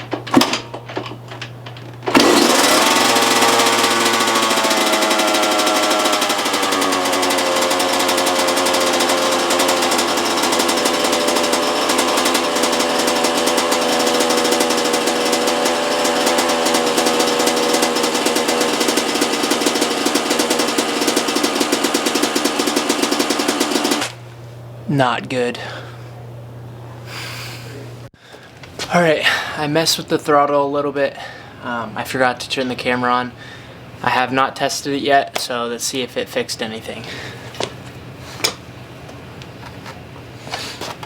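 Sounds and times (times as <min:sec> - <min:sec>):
two-stroke dirt bike engine running: 0:02.1 - 0:24.2.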